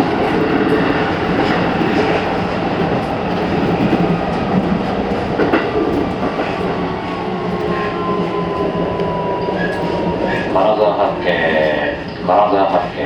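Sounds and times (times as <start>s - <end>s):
train wheel clicks: 0.0s - 8.3s
train rolling noise: 0.0s - 13.0s
train motor whine: 5.6s - 12.4s.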